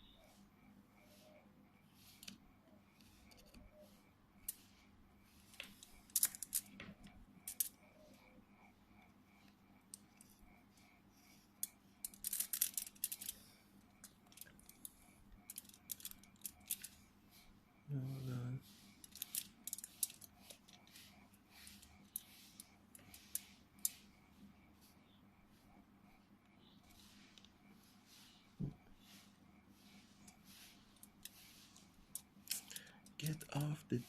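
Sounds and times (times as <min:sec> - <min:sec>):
hand tools clicking and scraping: 0:02.0 - 0:07.8, 0:11.6 - 0:17.0, 0:18.0 - 0:24.2, 0:29.2 - 0:34.0.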